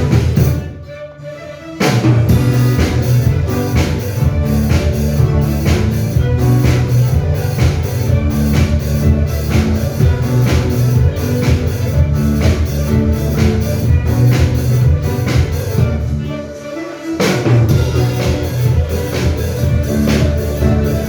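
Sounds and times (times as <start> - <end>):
drum kit beat: 0.0 - 0.8, 1.8 - 16.2, 17.2 - 21.0
instrumental band music: 0.0 - 21.0.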